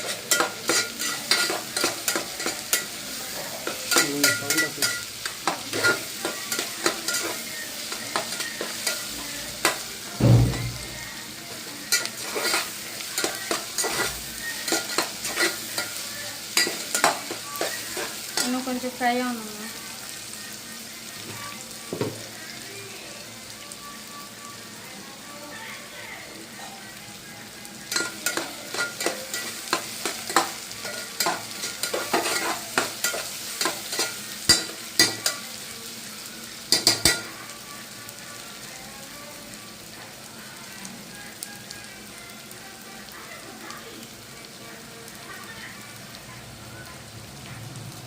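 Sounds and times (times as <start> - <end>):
spoon scraping against pan: 0.0 - 9.9, 11.8 - 18.8, 27.9 - 35.6, 36.7 - 37.4
food sizzling in hot oil: 0.0 - 48.0.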